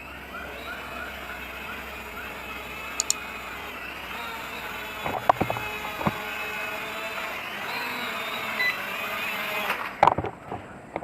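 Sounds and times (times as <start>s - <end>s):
small electric motors whirring: 0.0s - 10.6s
sharp clicks: 3.0s - 3.2s.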